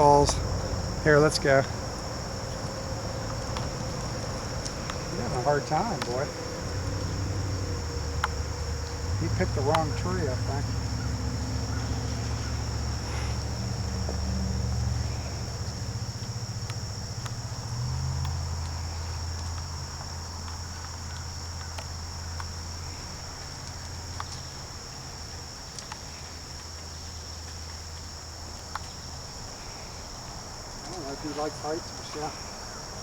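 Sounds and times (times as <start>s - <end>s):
insects trilling: 0.0s - 33.0s
faint ticks: 13.0s - 32.8s.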